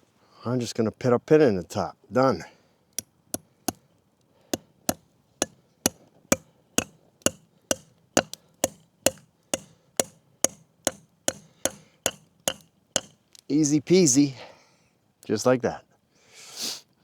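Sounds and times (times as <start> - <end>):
hammer blows on pin: 4.6 - 13.2.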